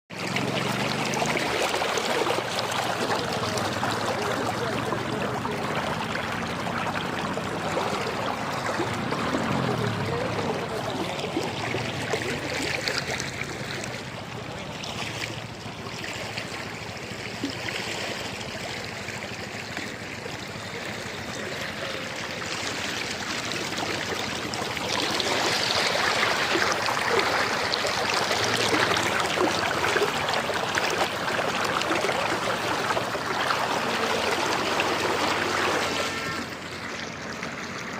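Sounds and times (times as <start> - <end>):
stream water rushing: 0.1 - 37.9.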